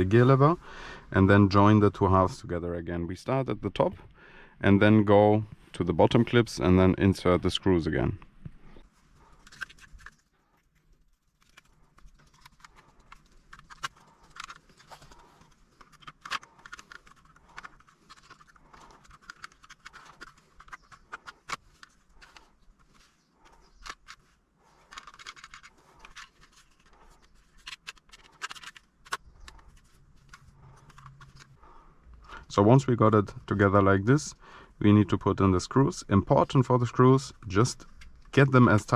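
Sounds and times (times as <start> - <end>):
plastic parts clicking: 9.3 - 32.4.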